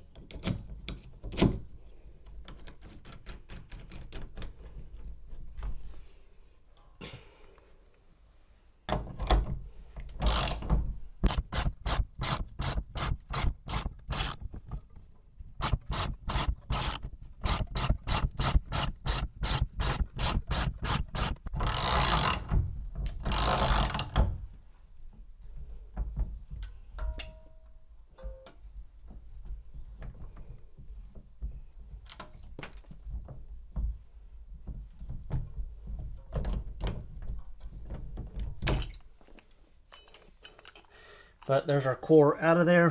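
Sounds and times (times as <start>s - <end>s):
socket ratchet clicking: 10.2s - 14.4s, 15.6s - 22.5s, 23.2s - 24.2s.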